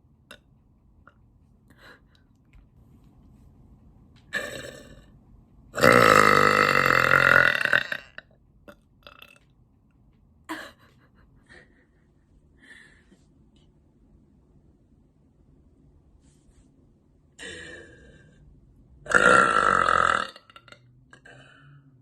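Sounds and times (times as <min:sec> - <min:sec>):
woman burping: 0:04.3 - 0:05.0, 0:05.8 - 0:09.4, 0:17.4 - 0:18.4, 0:19.1 - 0:21.7.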